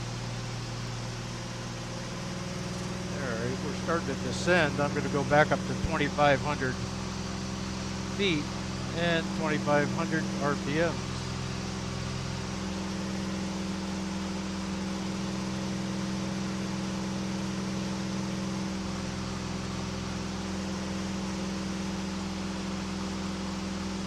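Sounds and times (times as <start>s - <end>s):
light airplane engine droning: 0.0s - 24.0s.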